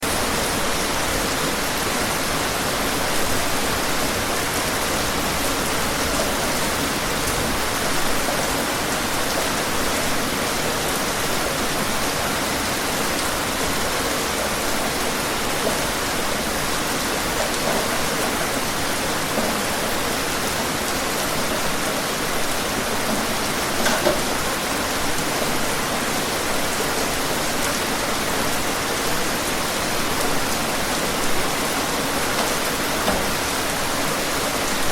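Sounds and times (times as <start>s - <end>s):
steady rain hiss: 0.0s - 34.9s
raindrops tapping: 14.4s - 20.0s.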